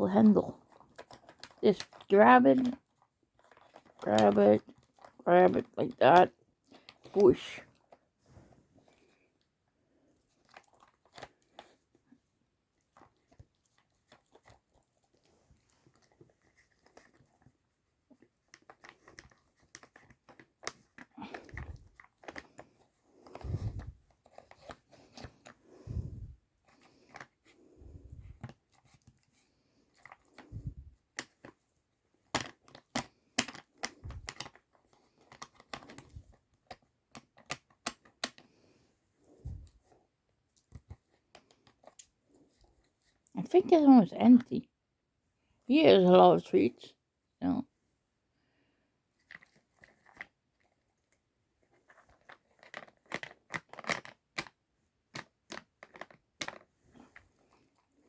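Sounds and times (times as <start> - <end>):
plastic puzzle toy clicks and knocks: 32.3 - 34.6.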